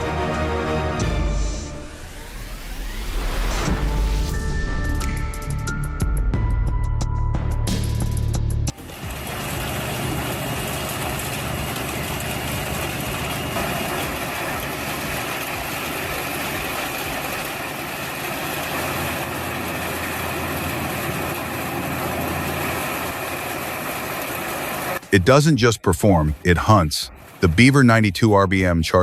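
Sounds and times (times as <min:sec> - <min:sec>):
wood chipper engine running: 0:08.7 - 0:25.2.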